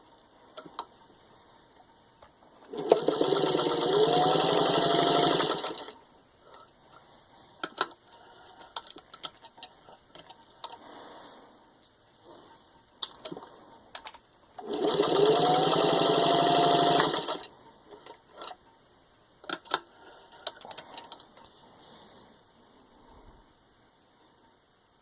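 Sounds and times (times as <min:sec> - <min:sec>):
sewing machine stitching: 0:02.6 - 0:06.0, 0:14.6 - 0:18.6.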